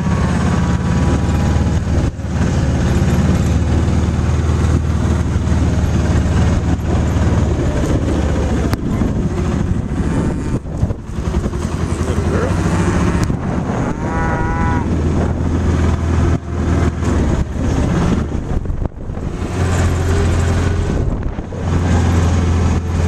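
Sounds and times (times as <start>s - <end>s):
vehicle engine humming: 0.0s - 23.0s.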